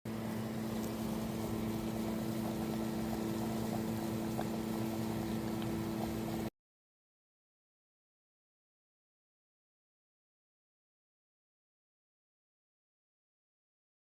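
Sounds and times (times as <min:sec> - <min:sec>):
motor hum: 0:00.1 - 0:06.5.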